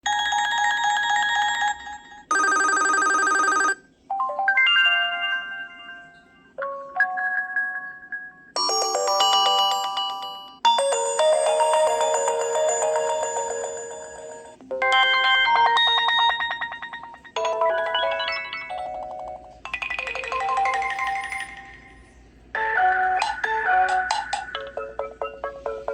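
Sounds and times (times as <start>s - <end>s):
electronic ringtones: 0.1s - 25.9s.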